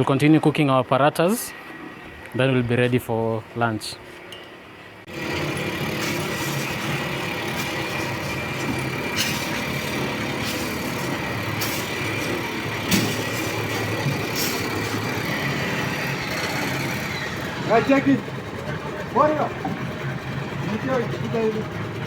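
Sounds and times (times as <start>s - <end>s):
mechanical engine-like hum: 0.0s - 22.0s.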